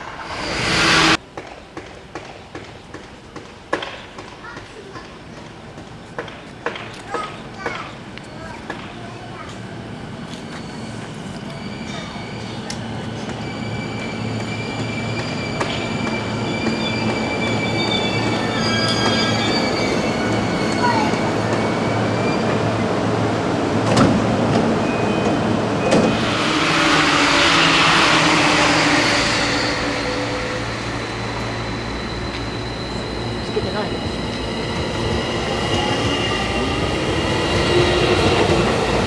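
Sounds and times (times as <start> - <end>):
loud air hiss: 0.0 - 1.2
electric train running gear tones: 23.8 - 39.0.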